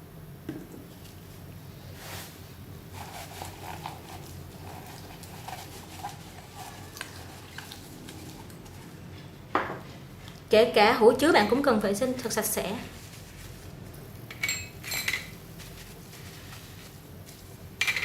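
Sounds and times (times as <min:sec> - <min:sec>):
utensils and jars clinking: 0:14.3 - 0:15.4, 0:17.8 - 0:18.0.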